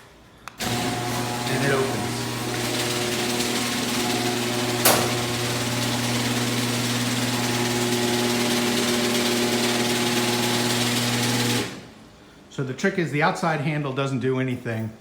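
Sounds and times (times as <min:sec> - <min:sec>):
garage door opener running: 0:00.6 - 0:12.0.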